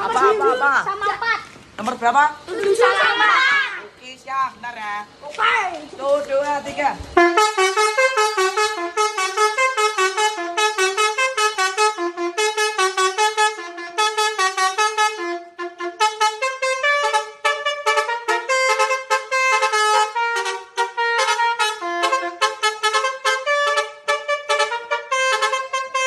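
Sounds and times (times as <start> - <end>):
horn playing a fast tune: 7.2 - 26.0.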